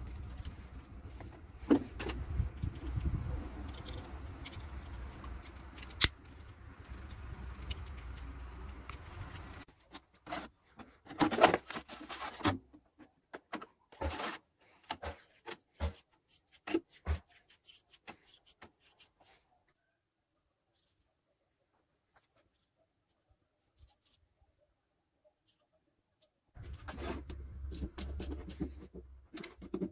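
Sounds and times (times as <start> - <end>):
low mechanical hum: 0.0 - 9.7.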